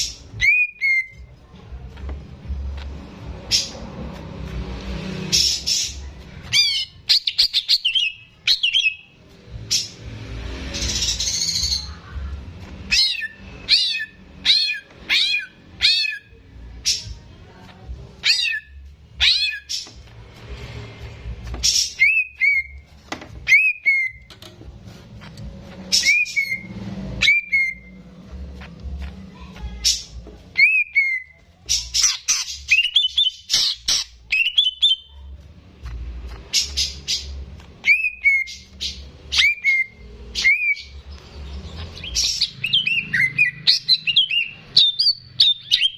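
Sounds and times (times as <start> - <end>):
bird singing whistled notes: 0.4 - 1.2, 26.0 - 28.0, 37.8 - 45.9.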